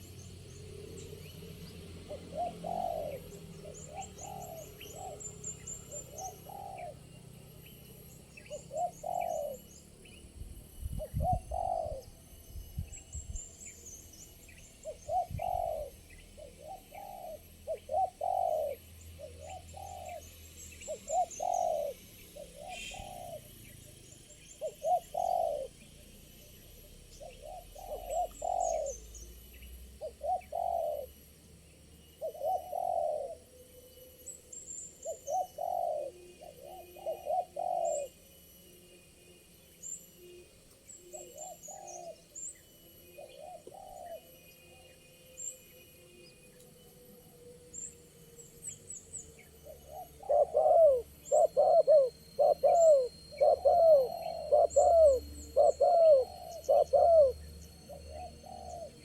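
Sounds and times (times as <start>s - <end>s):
doves cooing: 0.0s - 7.2s, 8.5s - 9.7s, 11.0s - 12.2s, 14.8s - 23.6s, 24.2s - 31.3s, 32.1s - 33.8s, 35.0s - 38.6s, 41.1s - 42.4s, 43.1s - 44.9s, 49.6s - 59.0s
small birds chirping: 0.0s - 38.8s, 39.4s - 59.0s.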